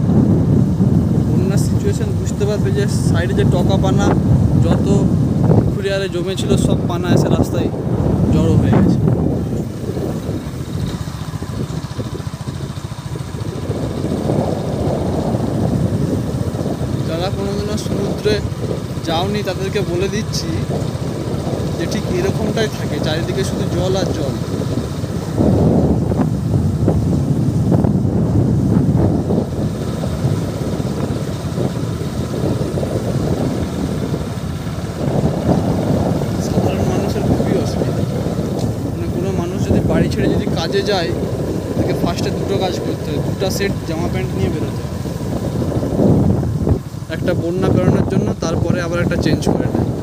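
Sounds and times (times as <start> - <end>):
wind buffeting microphone: 0.0 - 50.0
small engine running: 9.6 - 27.0, 29.2 - 47.8.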